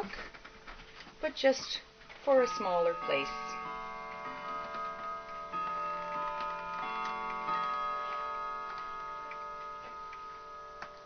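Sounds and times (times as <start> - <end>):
clock ticking: 2.1 - 11.0
clock chimes ringing: 2.2 - 11.0.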